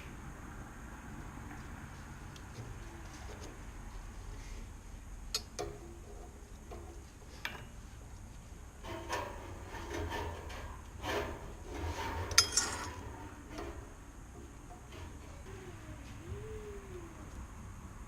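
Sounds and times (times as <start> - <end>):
parts rubbing and scraping: 5.5 - 16.5.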